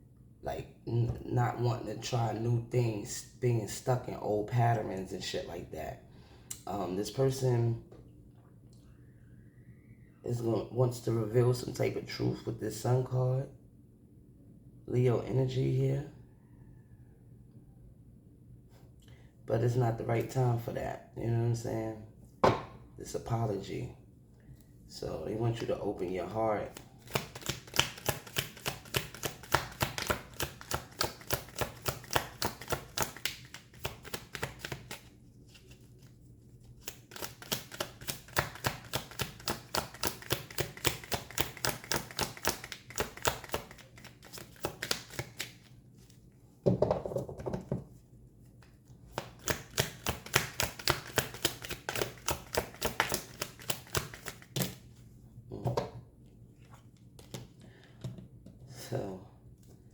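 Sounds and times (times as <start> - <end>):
cards being shuffled: 26.6 - 46.2, 48.5 - 54.9, 56.6 - 57.6.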